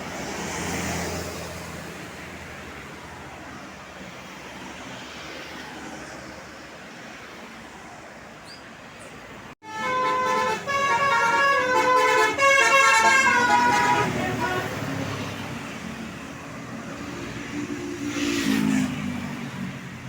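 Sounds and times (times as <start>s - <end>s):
road traffic noise: 0.0s - 20.0s
bus horn playing multi-note tune: 9.6s - 15.0s.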